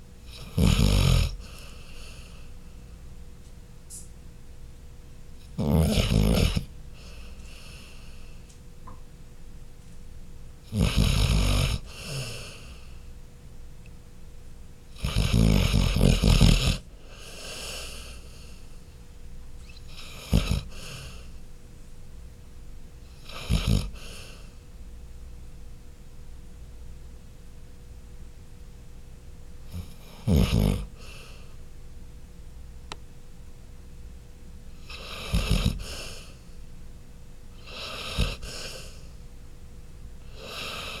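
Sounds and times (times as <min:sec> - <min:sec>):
dog snoring: 0:00.2 - 0:02.5, 0:05.4 - 0:08.4, 0:10.6 - 0:13.0, 0:14.9 - 0:18.6, 0:19.6 - 0:21.3, 0:23.0 - 0:24.6, 0:29.7 - 0:31.5, 0:34.8 - 0:36.5, 0:37.5 - 0:39.1, 0:40.2 - 0:41.0
dog breathing: 0:00.4 - 0:02.9, 0:05.5 - 0:08.5, 0:10.9 - 0:13.1, 0:15.2 - 0:18.9, 0:19.8 - 0:21.4, 0:23.4 - 0:24.6, 0:29.8 - 0:31.6, 0:34.8 - 0:36.6, 0:37.6 - 0:39.2, 0:40.2 - 0:41.0.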